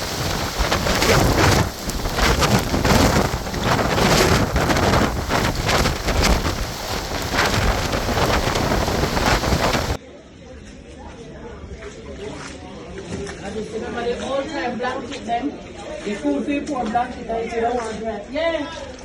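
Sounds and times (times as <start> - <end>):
heavy rain: 0.0 - 10.0
hurricane wind gusts: 0.0 - 10.0
wind buffeting microphone: 0.0 - 10.0.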